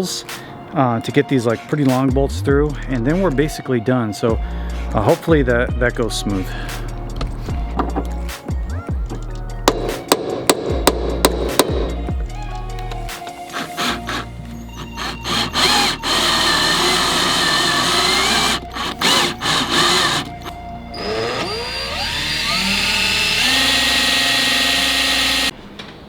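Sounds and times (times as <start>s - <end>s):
background music: 0.0s - 25.6s
power drill boring into steel: 13.5s - 25.5s.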